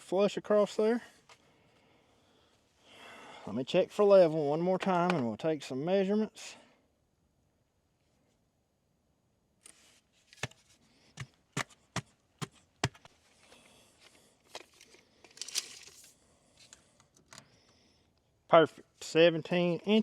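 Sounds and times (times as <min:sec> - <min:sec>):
tools clicking and knocking on wood: 0:11.2 - 0:13.1.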